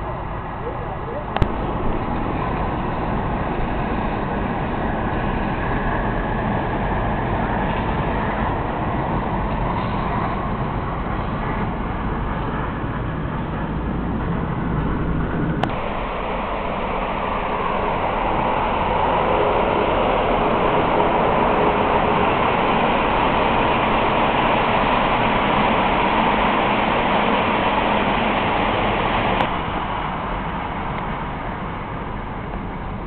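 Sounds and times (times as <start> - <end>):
click: 15.6 - 15.8.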